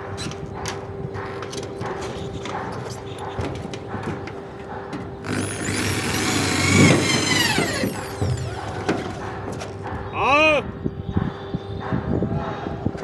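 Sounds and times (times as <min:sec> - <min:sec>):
electric power tool whine: 0:05.2 - 0:09.2.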